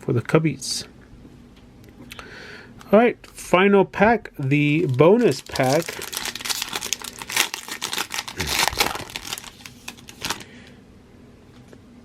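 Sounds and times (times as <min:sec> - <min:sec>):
wrapper crinkling and tearing: 0:04.7 - 0:10.6.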